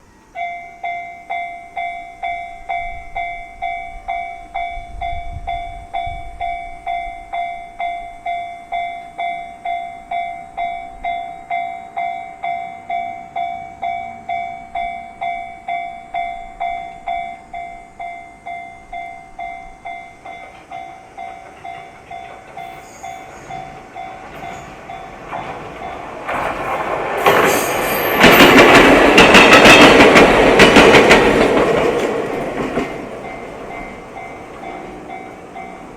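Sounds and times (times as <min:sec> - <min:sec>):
level crossing warning bell: 0:00.3 - 0:26.3, 0:27.3 - 0:35.9
train wheels clacking over rails: 0:19.9 - 0:35.9.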